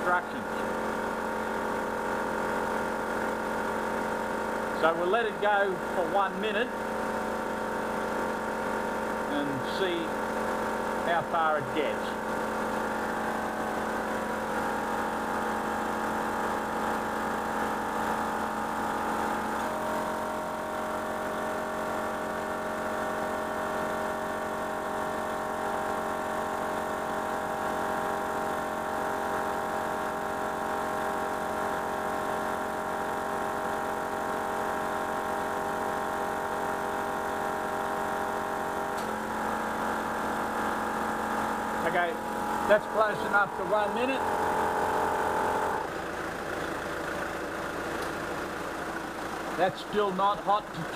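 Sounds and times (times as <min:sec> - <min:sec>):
air compressor running: 0:00.0 - 0:50.9
car engine idling: 0:00.1 - 0:23.7, 0:36.0 - 0:50.9.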